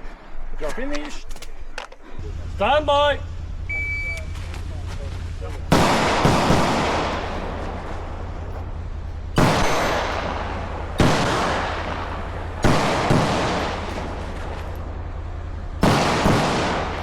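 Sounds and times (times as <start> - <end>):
rifle shots echoing: 5.6 - 17.0.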